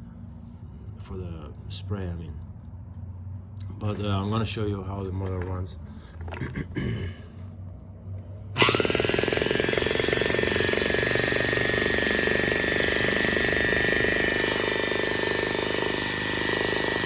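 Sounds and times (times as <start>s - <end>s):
air compressor running: 8.5s - 17.0s
motor high whine: 8.5s - 17.0s
rapid pump pulsing: 8.6s - 17.0s.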